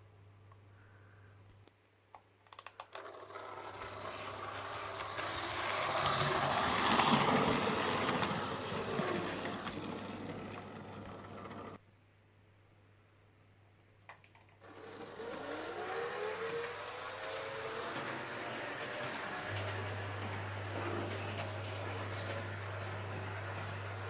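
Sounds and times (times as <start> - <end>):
model electric train running: 3.0 - 11.8, 14.6 - 24.0.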